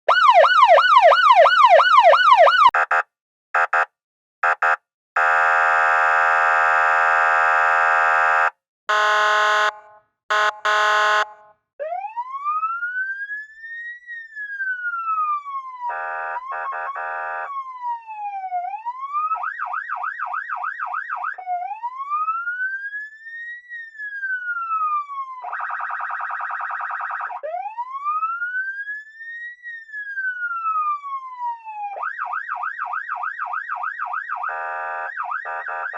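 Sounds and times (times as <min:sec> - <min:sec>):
electronic police siren: 0:00.1 - 0:09.7, 0:10.3 - 0:35.9
siren horn blasts: 0:00.1 - 0:11.6, 0:15.8 - 0:17.6, 0:34.3 - 0:35.9.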